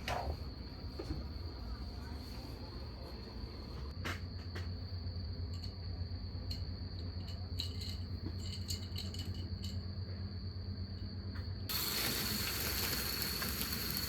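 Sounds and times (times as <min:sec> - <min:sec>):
insects trilling: 0:04.2 - 0:14.0
light clicks and rattles: 0:06.4 - 0:09.8.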